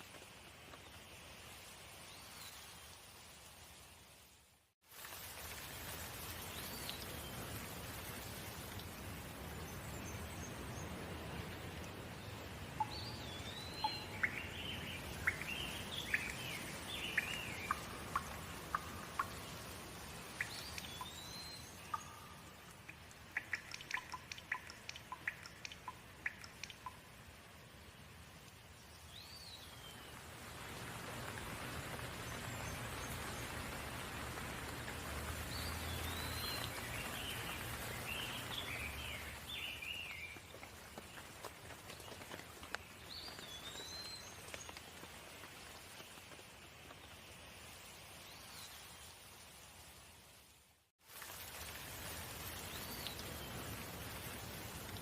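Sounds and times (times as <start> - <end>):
steady rain: 0.0 - 55.0
birds chirping: 12.5 - 27.0.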